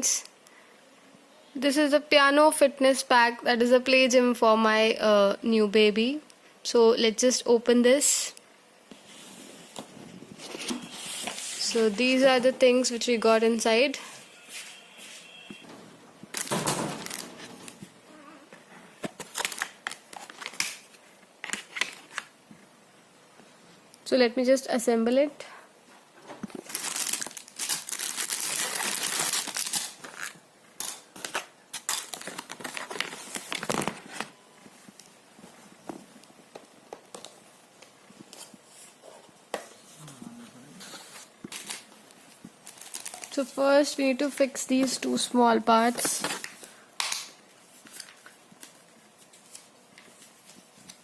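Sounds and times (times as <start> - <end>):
plastic packaging crinkling: 16.3 - 18.0, 19.0 - 22.3, 26.4 - 34.4, 41.4 - 43.6
low voice-like sound: 40.0 - 40.8.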